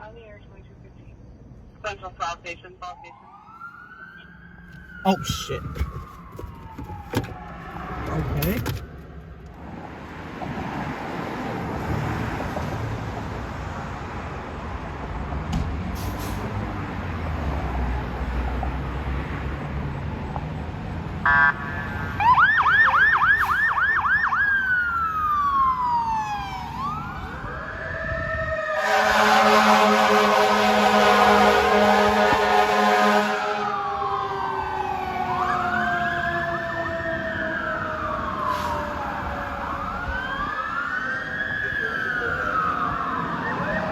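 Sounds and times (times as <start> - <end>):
fire engine rumble: 0.0 - 17.1, 20.0 - 43.9
emergency siren yelp and sweep: 3.0 - 8.2, 21.2 - 43.9
horn blast: 28.8 - 33.8.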